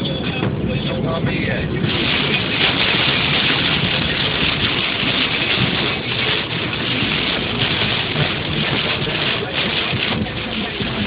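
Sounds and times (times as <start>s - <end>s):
heavy rain and sleet hissing: 1.3s - 11.0s.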